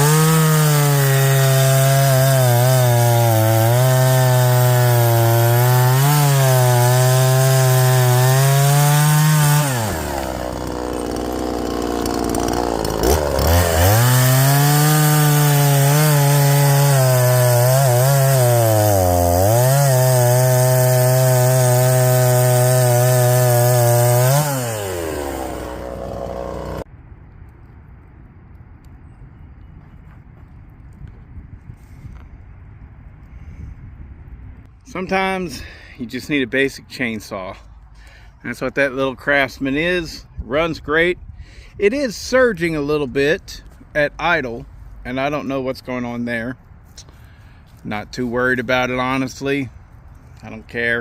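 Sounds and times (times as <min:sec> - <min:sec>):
chainsaw cutting wood: 0:00.0 - 0:26.9.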